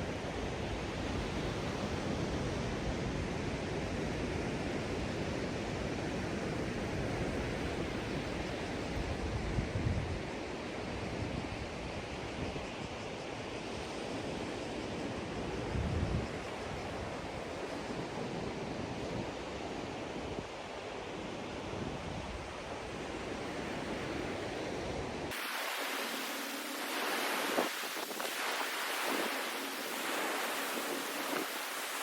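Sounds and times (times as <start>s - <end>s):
surf on a sandy beach: 0.0s - 32.0s
wind buffeting the microphone: 7.2s - 13.0s, 15.4s - 19.2s.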